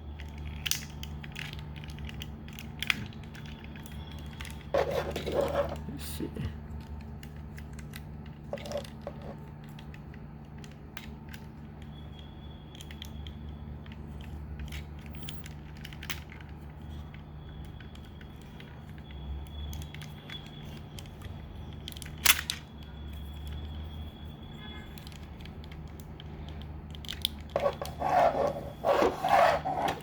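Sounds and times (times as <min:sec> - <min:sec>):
plastic clicks and creaks: 0:24.9 - 0:28.0.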